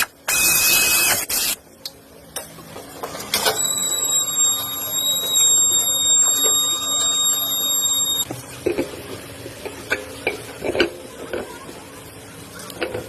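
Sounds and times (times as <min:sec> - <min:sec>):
high-pitched squeal: 0:03.5 - 0:08.3.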